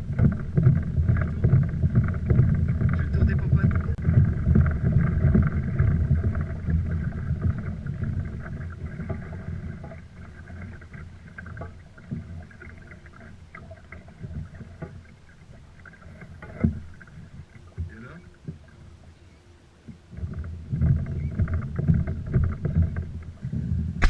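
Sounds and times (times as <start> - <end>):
water rumbling and splashing: 0.0 - 24.0
wind: 0.0 - 24.0.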